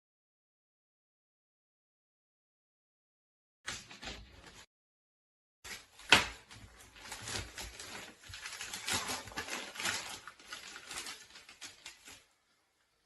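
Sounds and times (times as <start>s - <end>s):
packaging crinkling: 5.7s - 12.4s.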